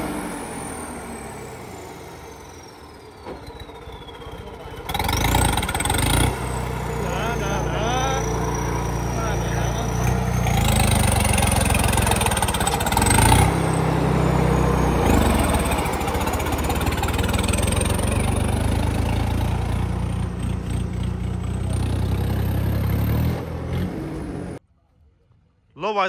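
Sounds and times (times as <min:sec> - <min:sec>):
tractor diesel engine running: 0:00.0 - 0:24.6.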